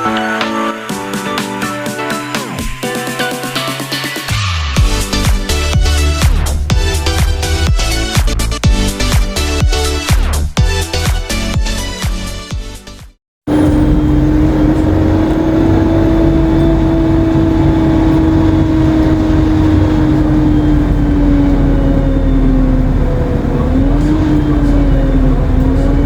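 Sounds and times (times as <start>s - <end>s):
bus turbo whine: 3.2s - 9.1s, 13.5s - 26.0s
diesel engine drone: 3.7s - 9.2s, 13.5s - 26.0s.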